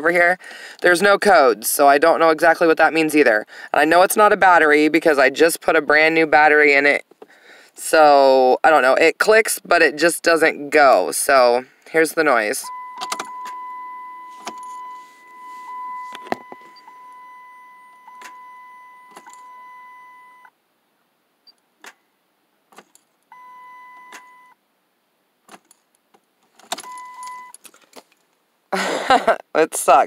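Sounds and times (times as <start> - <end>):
dashboard warning tone: 12.6 - 20.5, 23.3 - 24.6, 26.8 - 27.6
ignition clicks: 12.7 - 20.1, 22.7 - 24.5.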